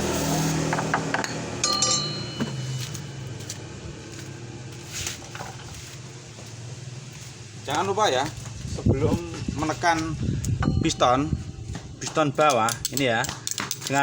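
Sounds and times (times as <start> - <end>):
steady low hum: 0.0 - 12.9
ringing metallic clink: 1.2 - 3.8, 10.5 - 14.0
metal tools clinking: 1.2 - 4.4, 9.7 - 14.0.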